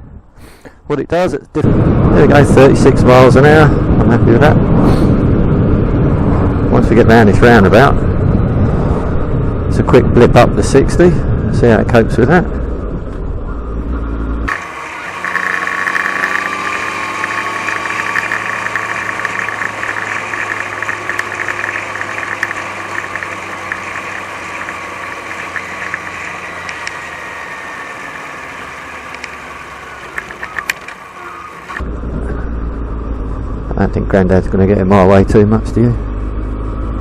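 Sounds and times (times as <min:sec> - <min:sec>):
motorcycle engine accelerating: 0:01.6 - 0:10.6, 0:12.2 - 0:37.0
wind rush: 0:01.6 - 0:13.5.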